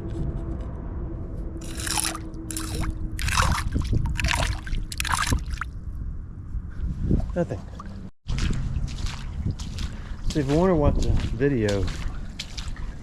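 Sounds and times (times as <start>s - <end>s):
creek water splashing: 1.6s - 5.7s, 7.4s - 13.0s.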